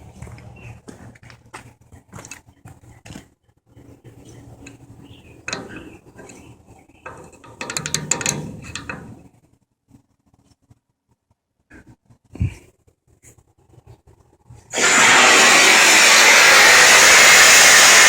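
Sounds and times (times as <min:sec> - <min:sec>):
low mechanical hum: 0:00.0 - 0:10.8
metallic clicking and clattering: 0:05.4 - 0:09.4.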